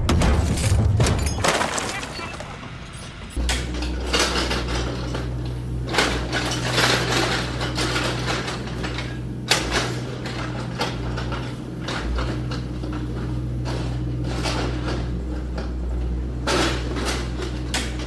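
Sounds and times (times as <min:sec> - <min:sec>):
mechanical clattering and clicking: 0:00.0 - 0:02.0.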